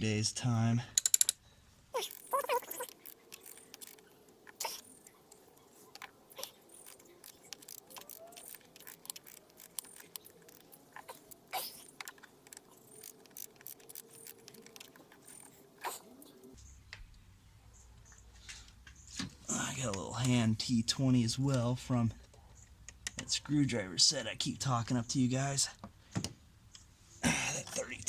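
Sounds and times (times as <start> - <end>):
socket wrench clicking: 1.0 - 1.4, 2.0 - 15.5.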